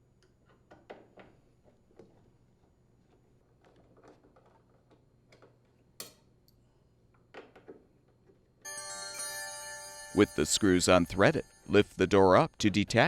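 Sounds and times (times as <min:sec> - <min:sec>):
soft background music: 0:08.7 - 0:13.0.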